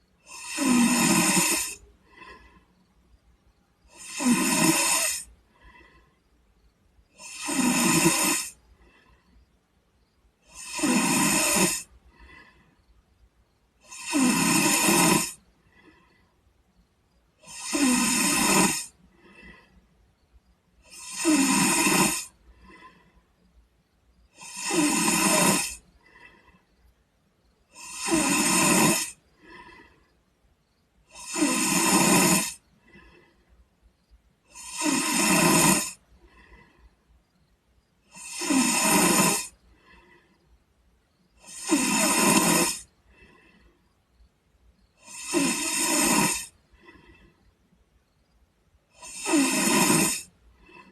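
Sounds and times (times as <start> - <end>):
boy snoring: 0.2 - 2.6, 3.9 - 6.0, 7.1 - 9.2, 10.4 - 12.7, 13.8 - 16.1, 17.4 - 19.7, 20.8 - 23.1, 24.3 - 26.6, 27.7 - 30.1, 31.0 - 33.4, 34.4 - 36.9, 38.0 - 40.4, 41.4 - 43.7, 45.0 - 47.3, 48.9 - 50.9.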